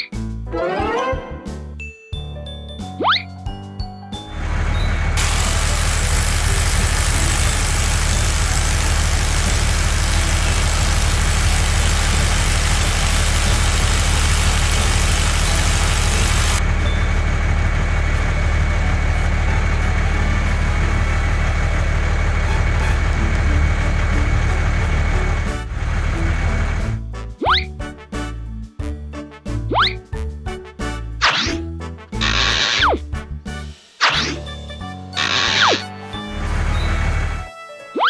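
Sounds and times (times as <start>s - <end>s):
heavy vehicle engine rumbling: 4.3s - 27.0s, 36.4s - 37.4s.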